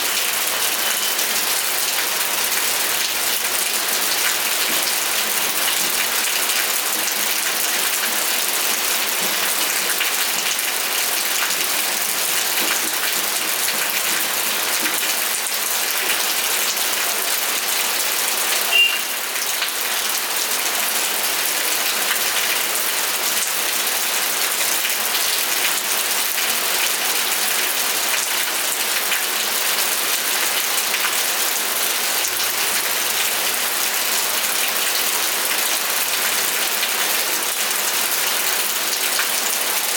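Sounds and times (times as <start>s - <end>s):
steady rainfall: 0.0s - 39.9s
sharp high-pitched blip: 18.7s - 19.1s.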